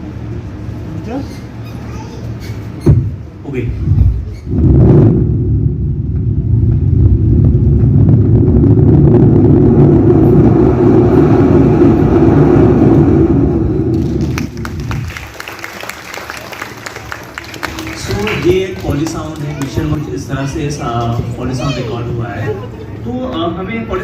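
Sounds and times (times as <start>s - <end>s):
deep rocket launch rumble: 2.9s - 15.4s.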